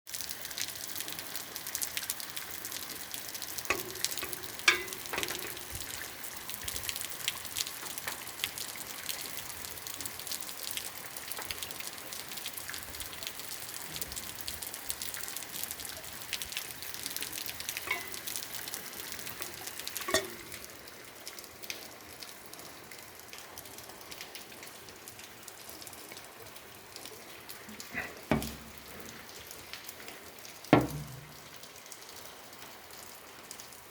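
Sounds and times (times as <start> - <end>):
heavy rain falling: 0.1 - 33.9
louder drips or knocks: 3.6 - 6.2, 17.8 - 18.5, 19.3 - 20.7, 28.0 - 29.2, 30.7 - 31.6.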